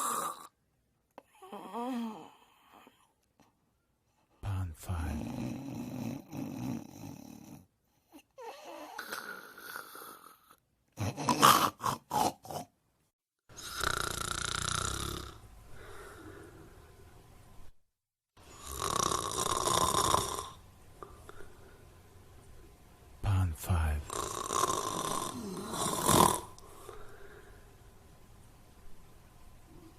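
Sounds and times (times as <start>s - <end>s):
person snoring: 0.0s - 0.5s, 1.3s - 3.0s, 4.9s - 12.7s, 13.6s - 16.7s, 18.5s - 21.5s, 23.3s - 27.5s.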